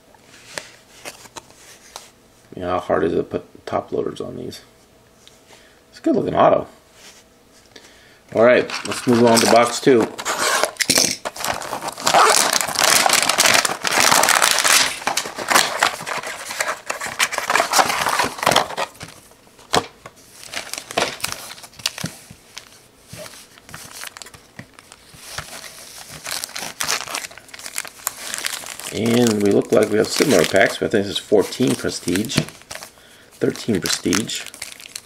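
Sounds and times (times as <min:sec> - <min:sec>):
plastic wrapping crinkling and tearing: 0:08.7 - 0:19.2, 0:20.4 - 0:35.0.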